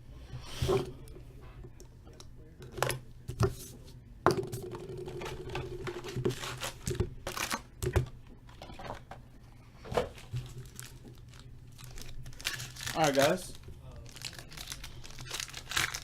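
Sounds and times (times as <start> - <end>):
cardboard tearing: 14.1 - 16.0.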